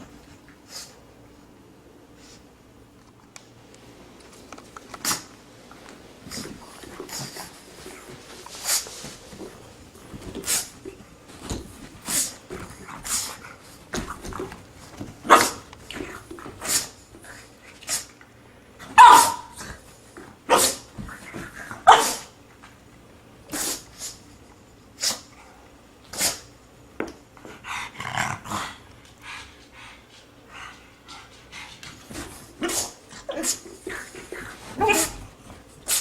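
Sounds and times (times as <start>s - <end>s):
dog yelp: 19.0s - 19.5s.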